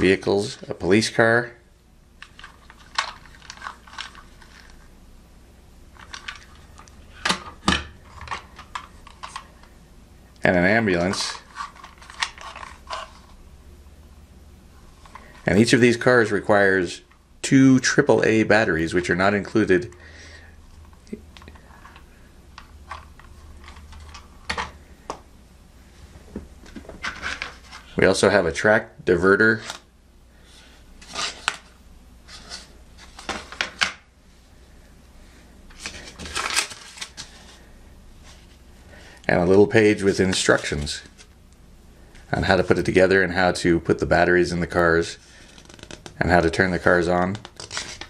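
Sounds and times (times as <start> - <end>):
low steady hum: 0.0 - 48.0
plastic toys and packaging handled: 2.2 - 4.9, 5.9 - 9.8, 10.9 - 13.4, 15.0 - 16.4, 20.7 - 25.2, 26.3 - 28.8, 29.4 - 34.0, 35.7 - 38.6, 39.2 - 41.4, 44.6 - 48.0.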